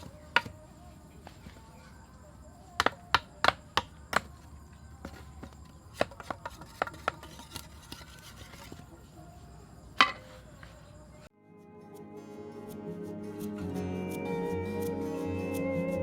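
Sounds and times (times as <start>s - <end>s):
soft music: 11.3s - 16.0s.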